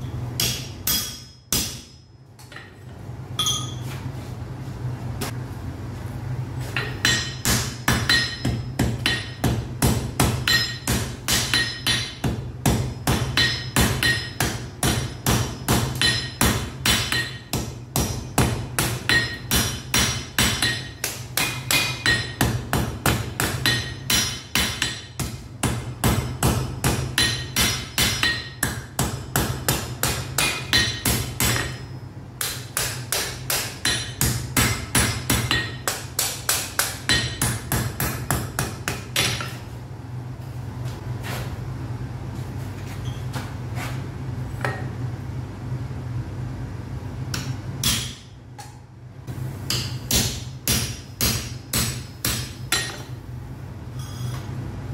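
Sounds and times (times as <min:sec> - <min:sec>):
hammer striking metal on anvil: 0:00.0 - 0:02.8, 0:03.4 - 0:03.9, 0:06.7 - 0:39.6, 0:47.3 - 0:48.8, 0:49.7 - 0:53.2.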